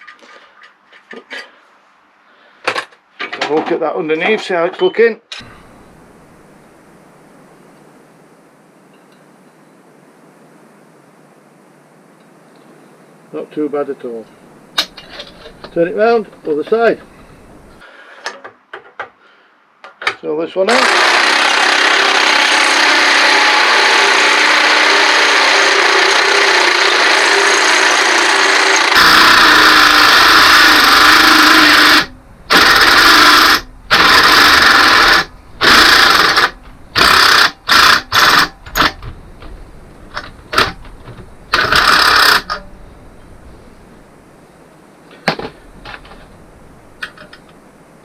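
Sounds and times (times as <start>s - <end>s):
electric drill drilling metal: 20.7s - 39.1s, 40.1s - 40.8s, 41.5s - 42.7s.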